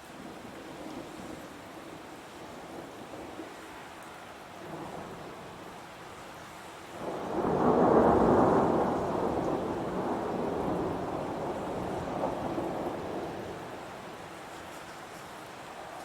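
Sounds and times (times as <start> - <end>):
heavy rain falling: 0.0 - 16.0
thunder rolling: 7.0 - 13.8.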